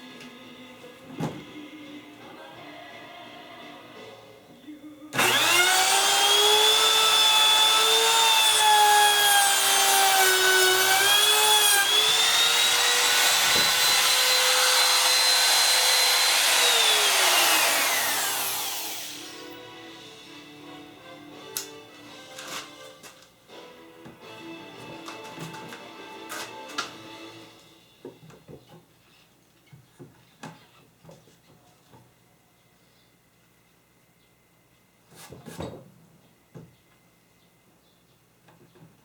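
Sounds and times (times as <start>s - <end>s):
power tool motor whine: 5.2s - 19.6s.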